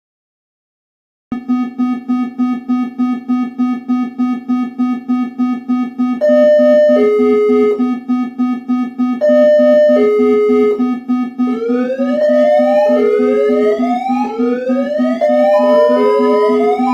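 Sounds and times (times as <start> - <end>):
pulsing low alarm buzz: 1.3 - 16.9
two-note falling beep: 15.0 - 16.9.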